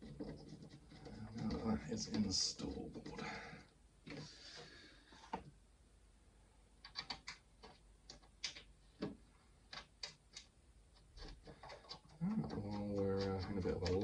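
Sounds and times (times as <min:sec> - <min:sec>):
light clicks and taps: 0:06.8 - 0:14.0.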